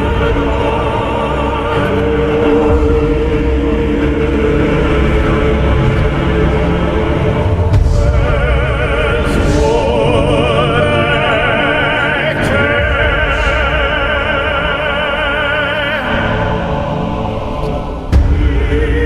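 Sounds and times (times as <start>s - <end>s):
low ambient drone: 0.0s - 19.0s.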